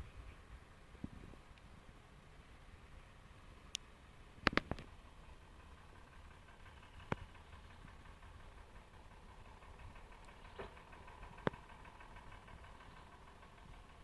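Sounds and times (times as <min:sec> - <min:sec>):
diesel engine running: 0:00.0 - 0:14.0
rhythmic engine clatter: 0:03.9 - 0:14.0.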